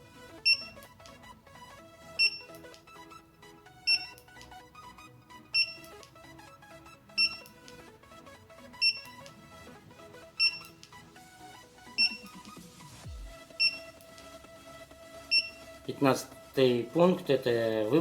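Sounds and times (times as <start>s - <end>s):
background music: 0.0s - 18.0s
car alarm beeps: 0.4s - 0.8s, 2.2s - 2.8s, 3.8s - 4.2s, 5.5s - 6.0s, 7.2s - 7.5s, 8.8s - 9.1s, 10.4s - 10.8s, 12.0s - 12.3s, 13.6s - 13.9s, 15.3s - 15.6s.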